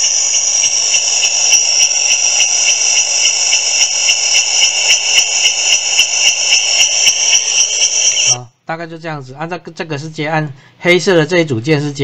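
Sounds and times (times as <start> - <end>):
pulsing cicada buzz from speaker: 0.0 - 8.4.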